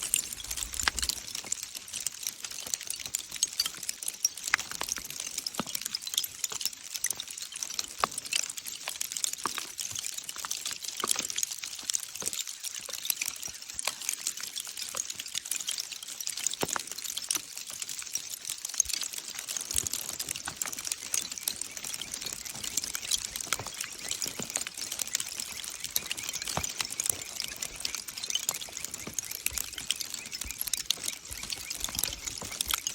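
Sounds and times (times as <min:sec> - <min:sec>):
hailstones striking rock: 0:00.0 - 0:02.2, 0:21.2 - 0:32.9.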